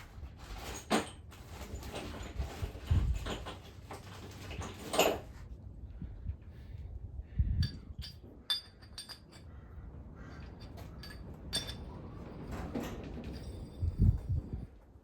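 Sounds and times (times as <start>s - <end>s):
metal tools clinking: 0.4s - 5.4s, 7.6s - 9.6s, 10.4s - 14.3s.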